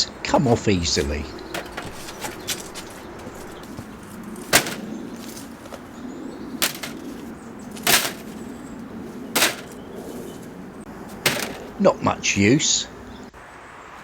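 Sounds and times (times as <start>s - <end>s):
wood cracking and knocking: 1.0s - 5.9s, 6.6s - 8.5s, 9.3s - 10.5s, 11.2s - 11.8s.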